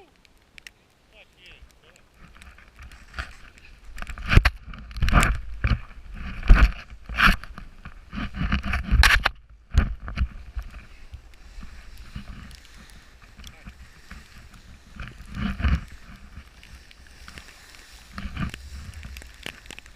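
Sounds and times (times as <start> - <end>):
snowboard scraping over snow: 10.0 - 19.9.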